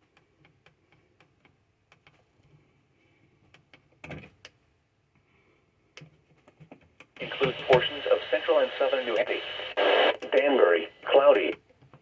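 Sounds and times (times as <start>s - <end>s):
faint receiver hiss: 7.2s - 11.6s.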